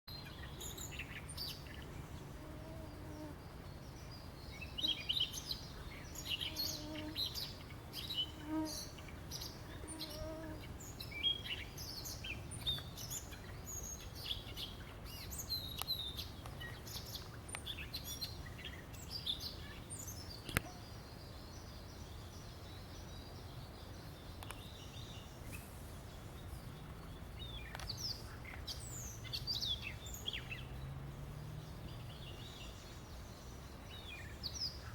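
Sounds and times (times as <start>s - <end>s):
songbirds chirping: 0.1s - 34.9s.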